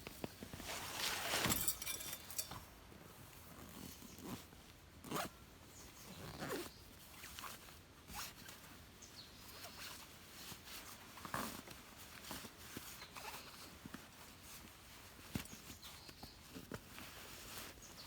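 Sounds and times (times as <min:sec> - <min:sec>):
zipper being pulled: 0:05.1 - 0:05.3.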